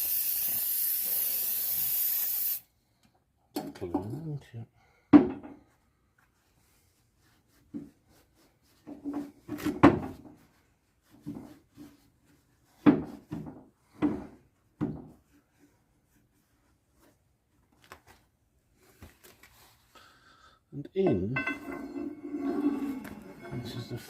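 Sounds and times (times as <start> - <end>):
heavy metal parts clunking: 21.1 - 24.0.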